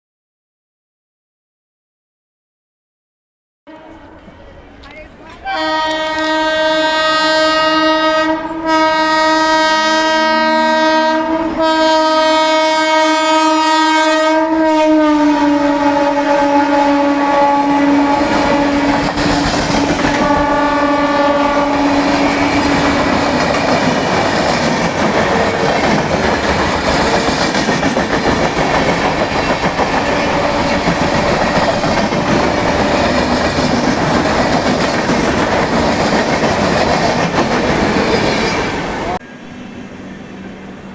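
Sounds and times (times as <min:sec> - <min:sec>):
locomotive twin-tone horn: 0:03.7 - 0:04.6, 0:05.4 - 0:24.4
train wheels on rails: 0:03.8 - 0:06.7, 0:14.7 - 0:40.9.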